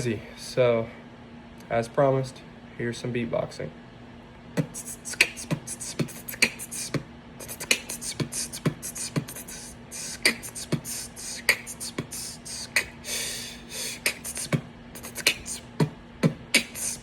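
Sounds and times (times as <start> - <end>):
human beatboxing: 4.6 - 17.0.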